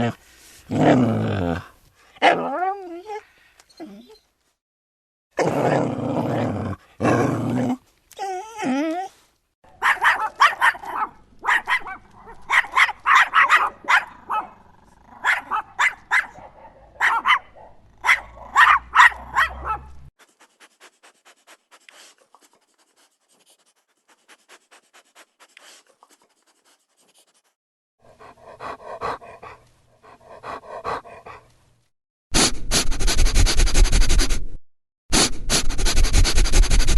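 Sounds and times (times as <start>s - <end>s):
dog growling: 5.4s - 9.0s, 28.1s - 31.5s
puppies barking and yipping: 9.8s - 14.5s
dog sniffing loudly: 20.2s - 31.5s, 32.4s - 36.9s
dog panting: 28.1s - 31.6s.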